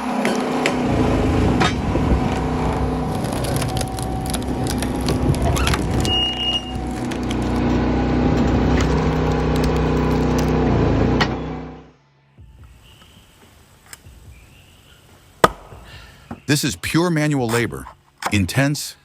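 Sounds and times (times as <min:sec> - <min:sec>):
firewood machine engine running: 0:00.0 - 0:11.9
logs cracking and splintering: 0:00.8 - 0:10.7.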